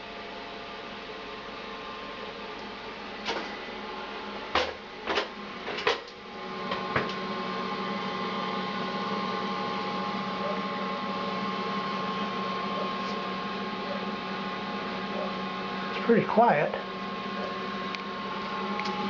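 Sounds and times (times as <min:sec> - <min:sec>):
heater fan motor humming: 0:00.0 - 0:19.0.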